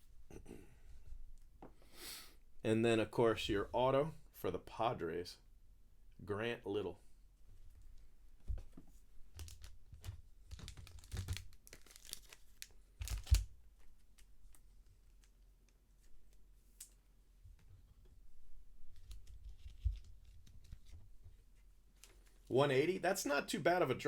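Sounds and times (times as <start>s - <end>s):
packaging crinkling and tearing: 9.4s - 13.5s.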